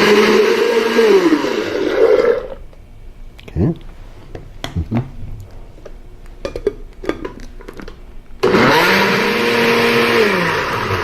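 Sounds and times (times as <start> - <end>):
kitchen blender motor running: 0.0 - 2.6, 8.4 - 11.0.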